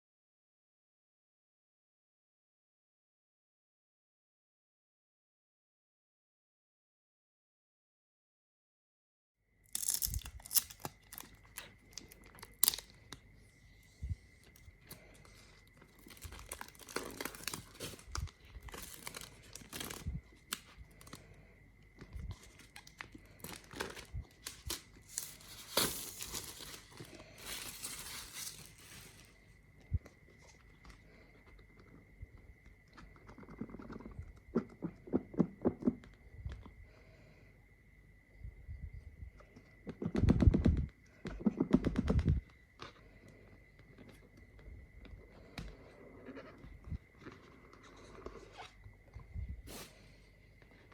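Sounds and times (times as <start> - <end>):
packaging tearing and crinkling: 9.7 - 13.0, 15.8 - 21.2, 22.3 - 29.3.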